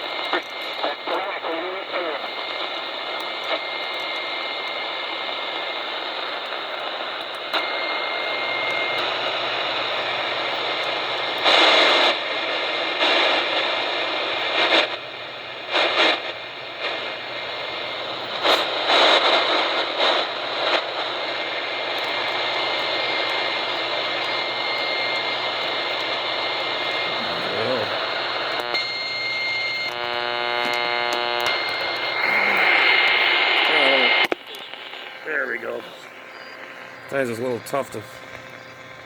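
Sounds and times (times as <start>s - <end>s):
radio noise bursts: 0.0s - 39.0s
radio static hiss: 0.0s - 39.0s
faint steady carrier whistle: 22.4s - 32.2s.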